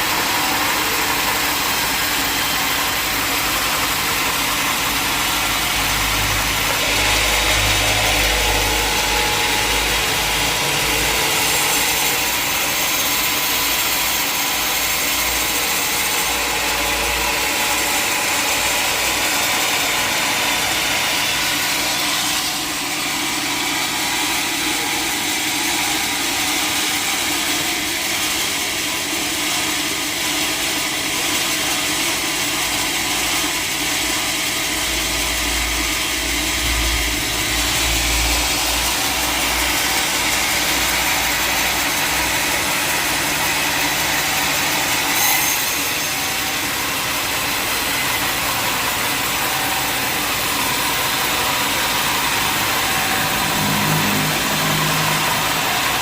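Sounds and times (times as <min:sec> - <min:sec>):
saw cutting wood: 0:00.0 - 0:56.0
engine hum: 0:50.6 - 0:56.0.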